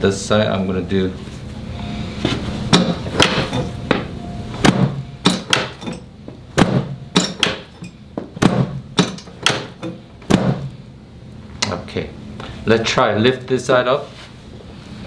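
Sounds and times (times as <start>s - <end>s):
sharp knocks on a back: 2.7s - 5.8s, 6.6s - 10.7s.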